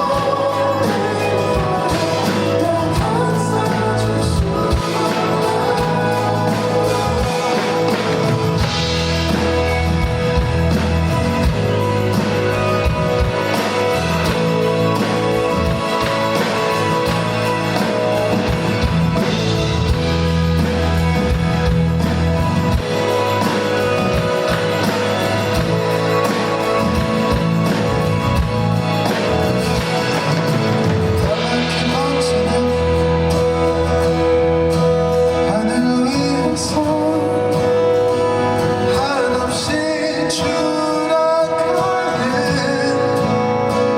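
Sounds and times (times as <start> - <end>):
man singing: 0.0 - 9.5, 31.1 - 43.9
guitar: 0.0 - 43.9
live band playing pop ballad: 0.0 - 43.9.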